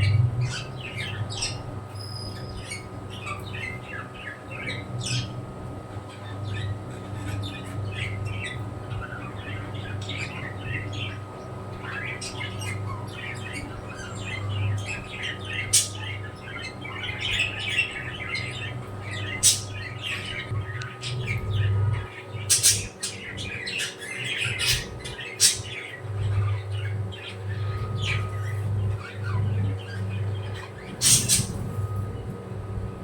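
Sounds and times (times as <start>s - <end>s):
birds chirping: 0.0s - 33.0s
loud bird squawks: 11.9s - 31.7s.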